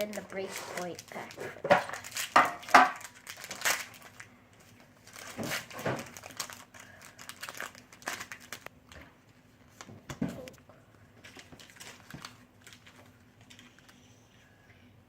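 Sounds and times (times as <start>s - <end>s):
foil wrapper crinkling and tearing: 0.0s - 9.0s, 11.2s - 14.0s.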